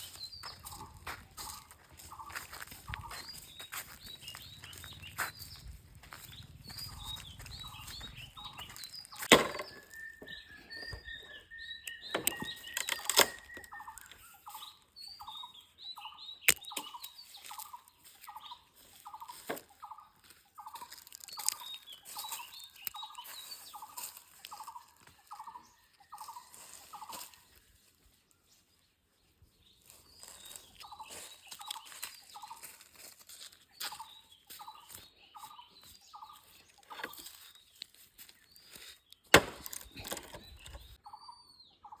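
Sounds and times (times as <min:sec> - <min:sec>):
short chirping calls: 0:00.0 - 0:27.7, 0:29.8 - 0:32.8, 0:33.6 - 0:42.0.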